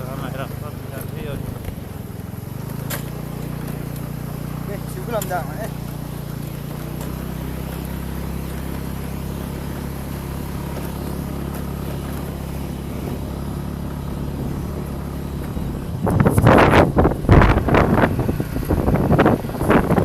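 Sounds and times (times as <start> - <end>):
vehicle engine running: 0.0 - 20.0
wind buffeting on microphone: 14.2 - 20.0.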